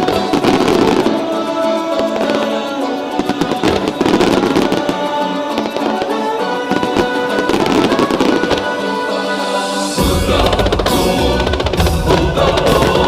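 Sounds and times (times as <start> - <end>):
fireworks crackling and bursting: 0.0 - 13.0.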